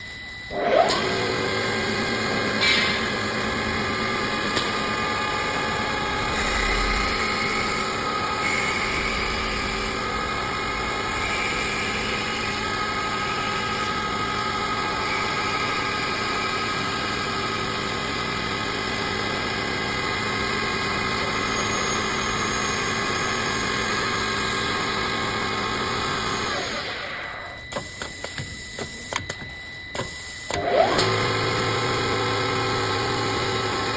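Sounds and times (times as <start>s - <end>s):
woodworking lathe whine: 0.0s - 33.9s.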